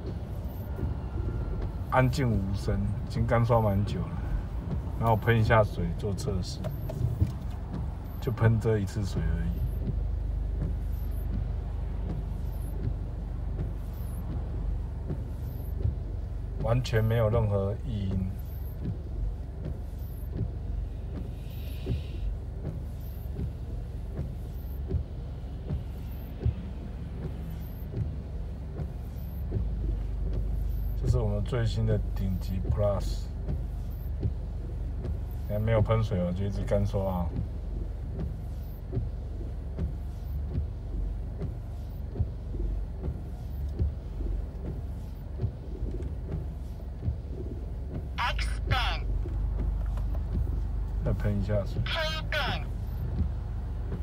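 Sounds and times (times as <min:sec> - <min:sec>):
low car rumble: 0:00.0 - 0:54.0
windshield wipers sweeping: 0:00.0 - 0:54.0
wiper arms knocking: 0:09.1 - 0:16.8, 0:37.3 - 0:54.0
brief hiss: 0:21.2 - 0:22.3.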